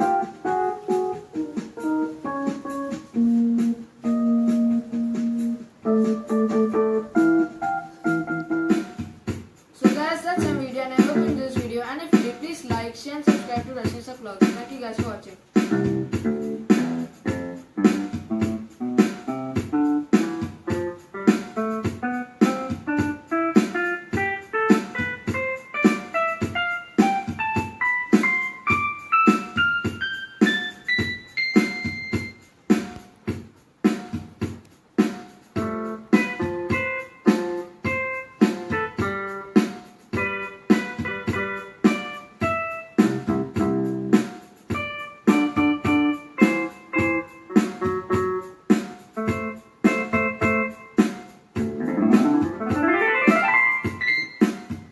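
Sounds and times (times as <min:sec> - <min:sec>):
digital keyboard piano notes: 0:00.0 - 0:33.0, 0:35.5 - 0:54.9.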